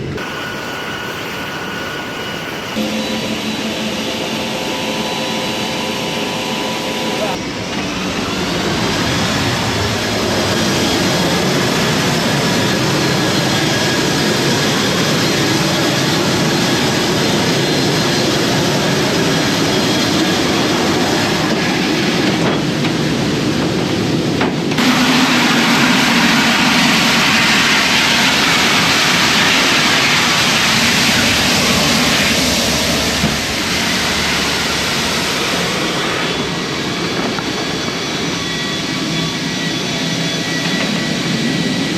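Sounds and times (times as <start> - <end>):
jet engines running: 0.0 - 41.9.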